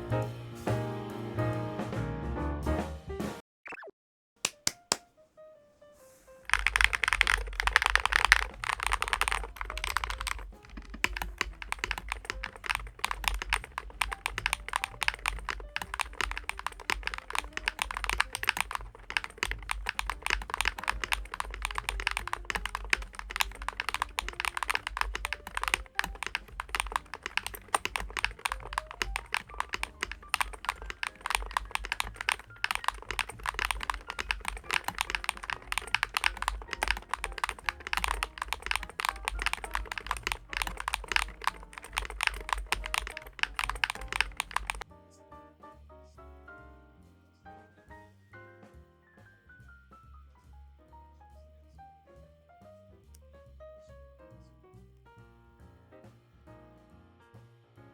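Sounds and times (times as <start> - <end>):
keyboard typing clicks: 4.5 - 5.0, 6.5 - 44.9.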